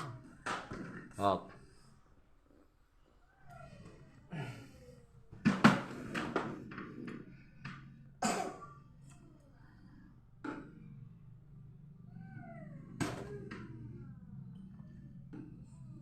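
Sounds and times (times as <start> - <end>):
small child coughing: 8.2 - 8.9.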